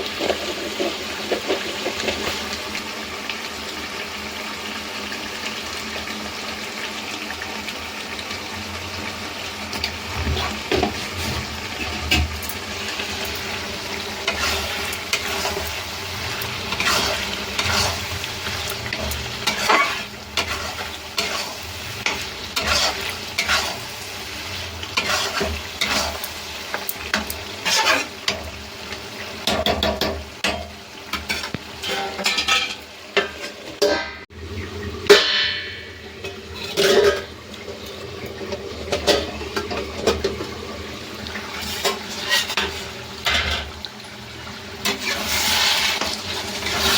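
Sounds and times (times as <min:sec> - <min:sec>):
utensil scraping a pan: 0:00.0 - 0:02.4, 0:10.2 - 0:28.5, 0:31.1 - 0:34.0, 0:36.2 - 0:40.5, 0:41.4 - 0:43.7, 0:44.8 - 0:46.9
chicken skin sizzling in a pan: 0:00.0 - 0:46.9.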